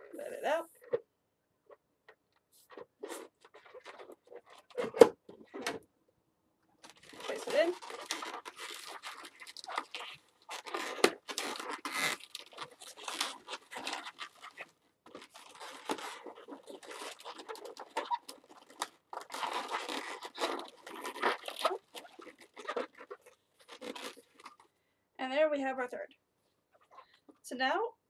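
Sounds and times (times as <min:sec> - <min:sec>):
balloons squeaking when twisted: 0:02.6 - 0:05.7, 0:06.8 - 0:24.7.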